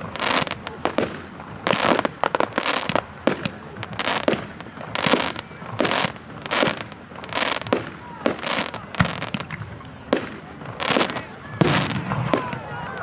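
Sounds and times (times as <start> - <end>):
fireworks bangs and crackling: 0.0 - 13.0.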